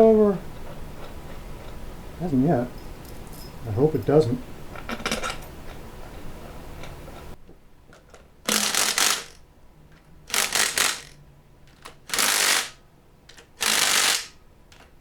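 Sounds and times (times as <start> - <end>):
ratchet wrench clicking: 8.5 - 9.4, 10.3 - 11.2, 11.8 - 14.4.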